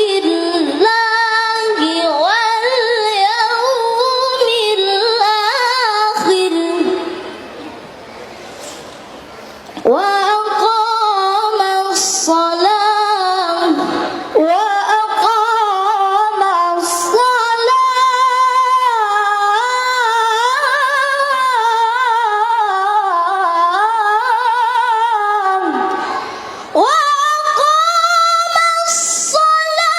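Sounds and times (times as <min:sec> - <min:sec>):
melodic recitation in high voice: 0:09.8 - 0:29.9.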